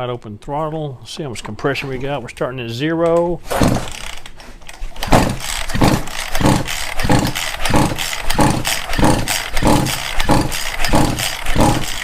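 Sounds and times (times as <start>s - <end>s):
chainsaw engine turning over: 3.5s - 12.0s.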